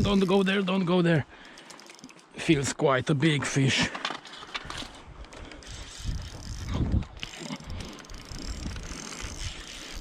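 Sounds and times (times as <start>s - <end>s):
fishing reel ratcheting: 0.0s - 0.6s, 1.4s - 2.4s, 4.7s - 10.0s.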